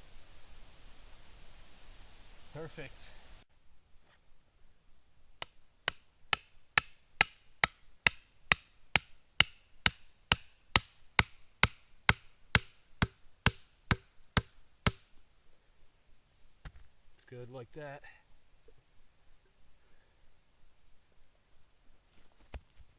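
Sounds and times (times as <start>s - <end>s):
wooden stake pounded into ground: 5.4s - 15.1s.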